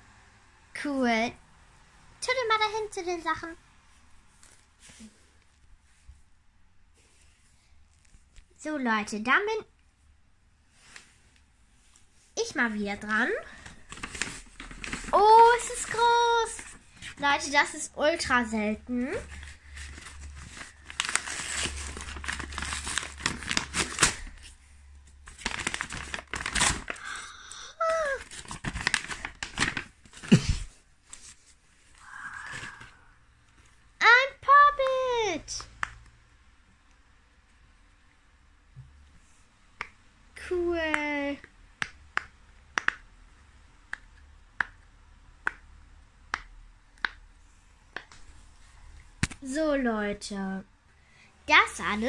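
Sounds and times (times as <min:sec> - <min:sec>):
plastic packaging crinkling and tearing: 0:13.6 - 0:17.1, 0:19.2 - 0:31.6
person saying oh: 0:32.0 - 0:33.1.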